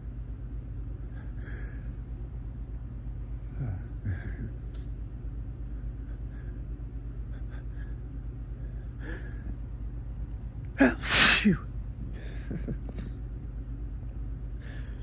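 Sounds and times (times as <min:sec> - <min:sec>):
steady low hum: 0:00.0 - 0:15.0
person sniffing: 0:10.8 - 0:11.6.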